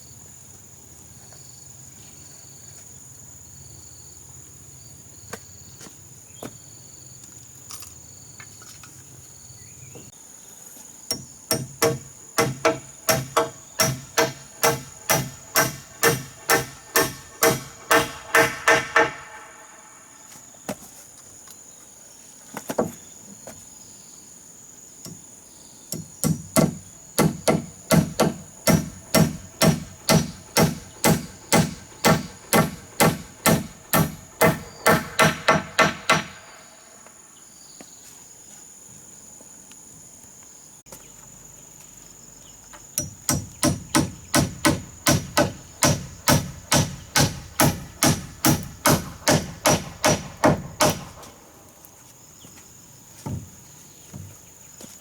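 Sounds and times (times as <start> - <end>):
high-pitched insect trill: 0.0 - 20.7
hammer blows on wood: 11.1 - 19.7, 25.9 - 36.6, 43.0 - 51.4.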